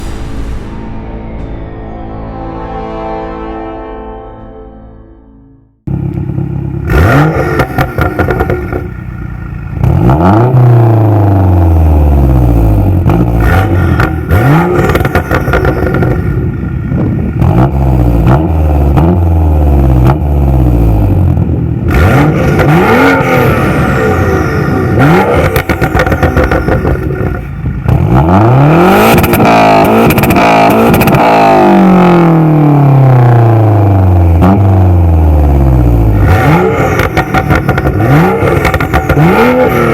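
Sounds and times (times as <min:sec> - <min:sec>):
car engine revving: 0:05.9 - 0:39.9
exhaust popping and crackling: 0:22.4 - 0:28.2, 0:36.6 - 0:39.9.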